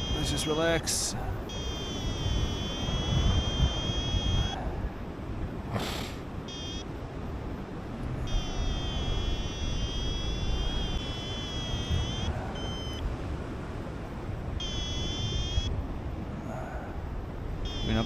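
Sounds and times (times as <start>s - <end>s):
variometer electronic tones: 0.0s - 0.6s, 1.4s - 4.6s, 6.5s - 7.0s, 8.2s - 13.0s, 14.6s - 15.7s, 17.6s - 18.0s
wind on microphone: 1.1s - 18.0s
short electronic beep: 1.5s - 4.6s, 6.5s - 6.8s, 8.3s - 13.0s, 14.6s - 15.7s, 17.7s - 18.0s.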